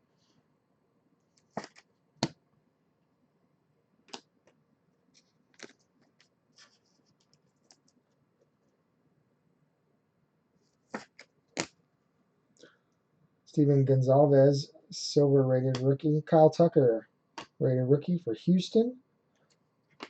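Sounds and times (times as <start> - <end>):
trading cards being handled: 1.4 - 1.9, 5.2 - 8.0, 10.9 - 11.4.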